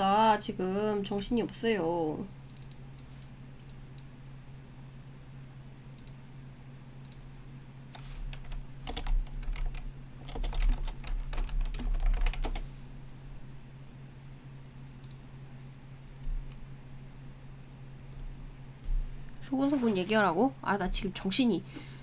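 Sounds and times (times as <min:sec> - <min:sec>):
steady low hum: 0:00.0 - 0:22.0
typing on computer keyboard: 0:08.3 - 0:12.6.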